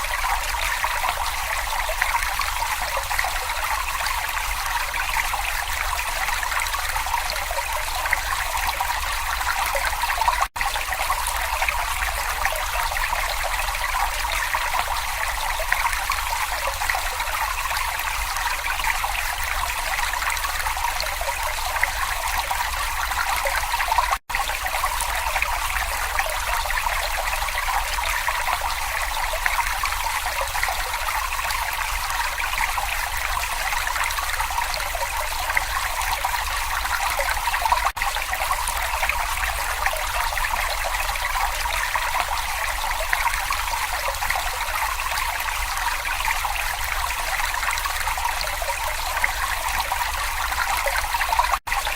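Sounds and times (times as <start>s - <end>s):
brook babbling over stones: 0.0s - 51.9s.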